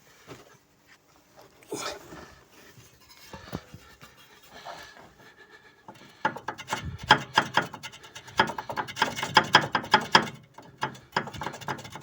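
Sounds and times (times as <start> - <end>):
suspension bushing knocking: 5.9 - 12.0.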